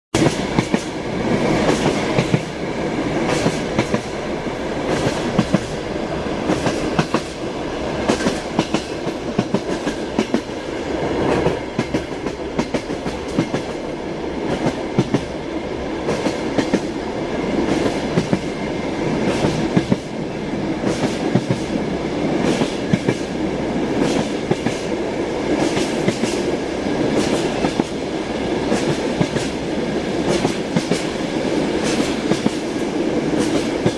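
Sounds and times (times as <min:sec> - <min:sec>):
train carriage rumble: 0:00.2 - 0:33.9
train wheels clacking over rail joints: 0:01.5 - 0:02.6, 0:03.2 - 0:04.2, 0:04.8 - 0:05.8, 0:06.4 - 0:07.4, 0:08.0 - 0:10.5, 0:11.3 - 0:13.8, 0:14.4 - 0:15.3, 0:19.2 - 0:20.1, 0:22.4 - 0:23.4, 0:25.6 - 0:28.0, 0:28.6 - 0:29.6, 0:30.2 - 0:31.1, 0:31.8 - 0:33.9.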